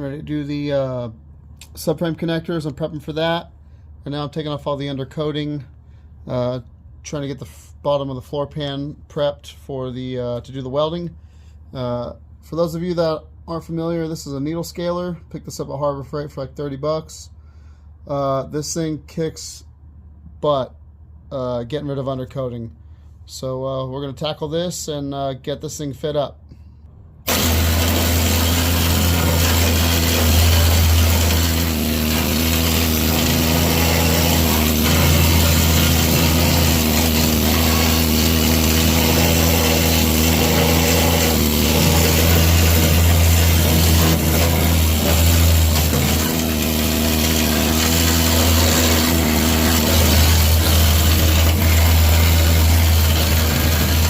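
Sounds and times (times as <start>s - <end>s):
needle scaler hammering metal: 27.3s - 54.0s.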